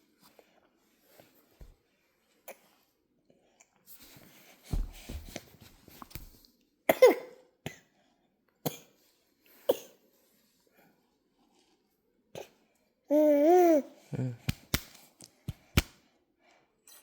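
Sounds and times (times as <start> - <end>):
baby coughing: 6.9 - 7.8, 8.6 - 9.0, 9.7 - 10.0.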